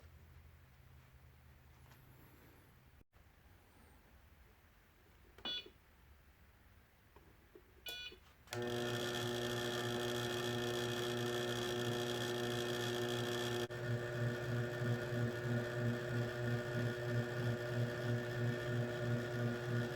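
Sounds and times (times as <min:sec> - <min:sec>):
lathe motor humming: 0:08.5 - 0:19.9.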